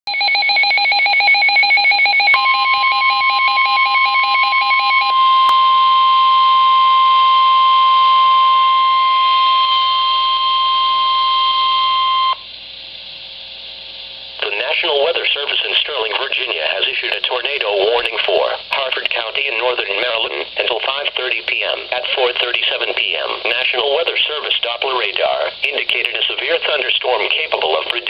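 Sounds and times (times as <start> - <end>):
steady high alarm tone: 0.1 - 12.4
faint radio hiss: 14.4 - 28.0.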